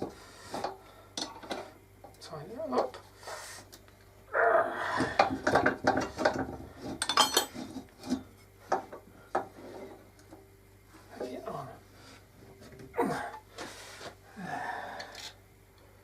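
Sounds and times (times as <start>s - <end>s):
metal tools knocking and clinking: 7.0s - 7.6s.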